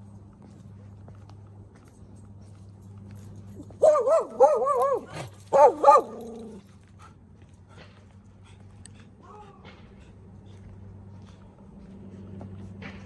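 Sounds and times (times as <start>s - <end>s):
dog barking in wavering yowls: 3.6s - 6.6s.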